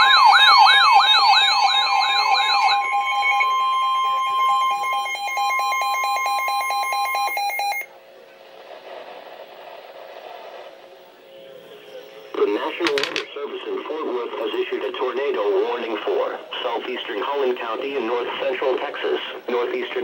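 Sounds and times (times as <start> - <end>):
low background noise: 7.4 - 20.0.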